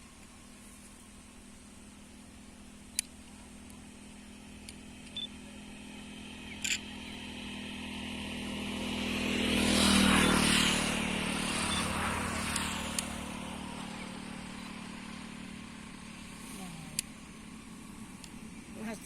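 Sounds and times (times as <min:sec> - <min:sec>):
vehicle passing by: 0:05.8 - 0:19.0.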